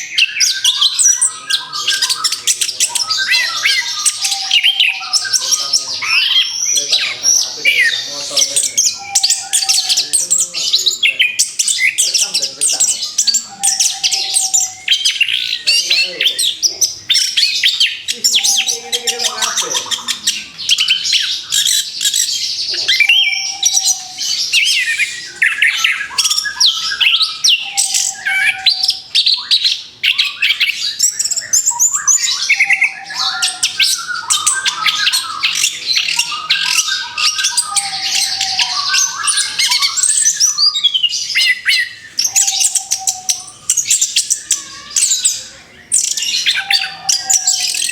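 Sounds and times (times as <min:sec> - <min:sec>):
thrush singing: 0:00.0 - 0:30.3.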